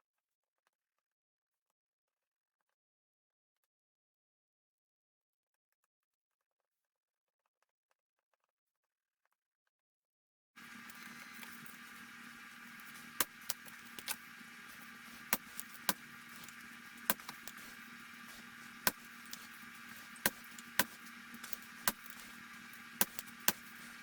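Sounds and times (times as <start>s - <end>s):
faint steady hum: 10.6s - 24.0s
small parts clicking and tapping: 10.6s - 24.0s.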